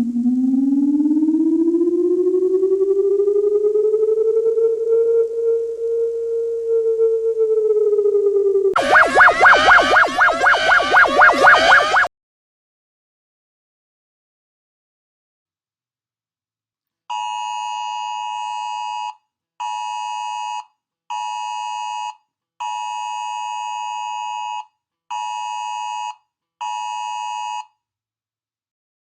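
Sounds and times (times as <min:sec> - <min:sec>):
electronic alarm beeps: 0:08.8 - 0:12.1.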